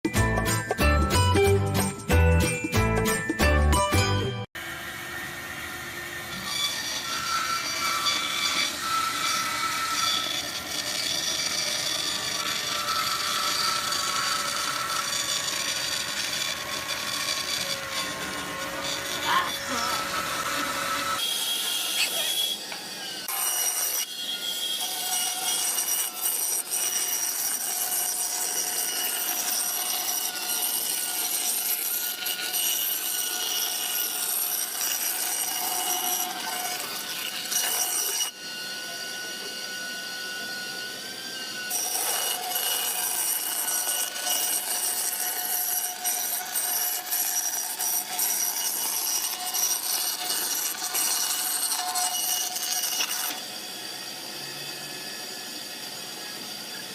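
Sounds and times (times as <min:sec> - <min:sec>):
power tool cutting wood: 0:04.5 - 0:56.9.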